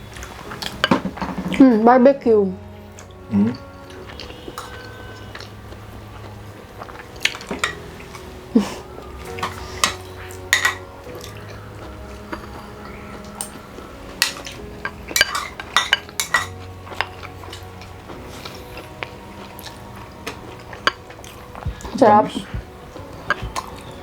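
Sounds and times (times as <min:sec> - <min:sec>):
cutlery clinking on plates: 0:07.2 - 0:08.2, 0:09.3 - 0:11.4, 0:14.2 - 0:17.7.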